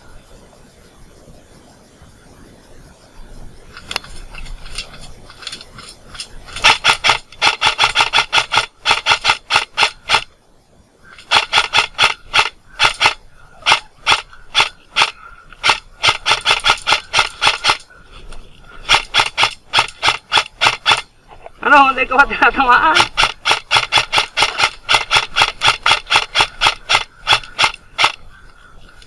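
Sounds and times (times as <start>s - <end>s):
airsoft rifle rapid shots: 4.7s - 10.3s, 11.1s - 17.8s, 18.8s - 21.1s, 22.1s - 28.2s.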